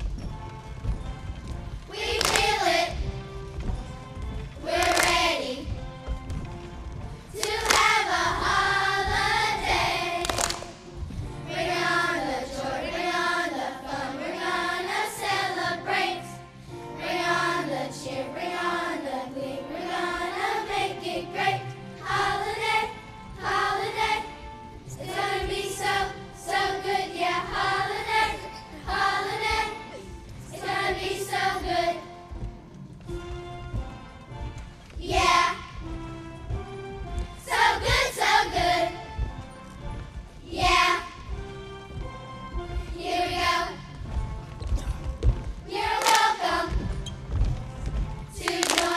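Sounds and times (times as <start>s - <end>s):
choir singing: 7.4s - 10.2s, 11.5s - 16.4s, 17.0s - 24.3s, 24.9s - 32.1s, 37.4s - 39.0s, 42.9s - 43.8s, 45.7s - 46.7s, 48.3s - 48.9s.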